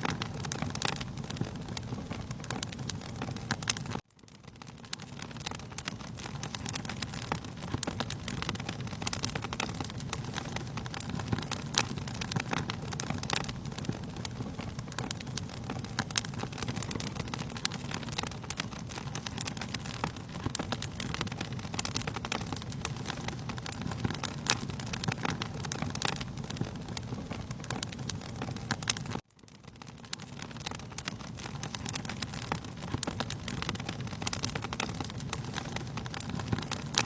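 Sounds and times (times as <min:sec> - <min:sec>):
fire crackling in fireplace: 0:00.0 - 0:37.0.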